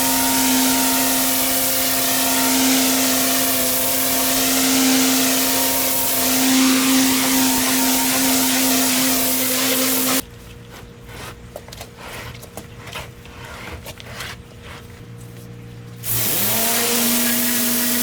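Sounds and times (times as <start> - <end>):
pressure washer spraying: 0.0 - 10.2, 16.0 - 18.0
pump humming: 0.0 - 10.2.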